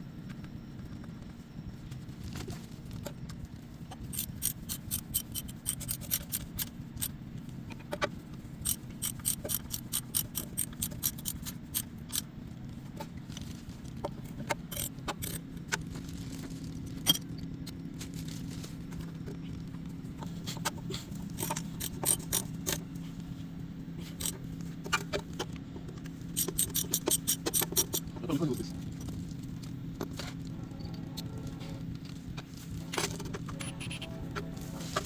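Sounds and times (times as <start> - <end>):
steady low hum: 4.0 - 7.2, 8.5 - 12.2
metal tools clinking: 4.1 - 6.7, 8.6 - 12.2, 14.7 - 15.4, 21.4 - 22.8, 24.2 - 24.4, 26.4 - 28.7.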